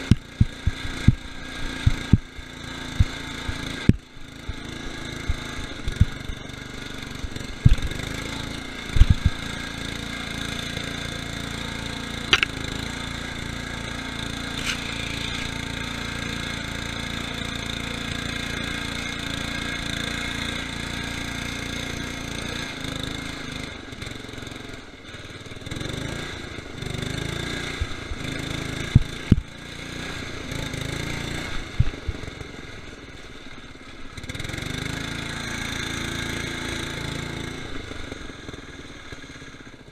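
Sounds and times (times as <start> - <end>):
lawn tractor engine running: 0.0 - 39.9
sharp knocks and thumps: 12.3 - 12.6.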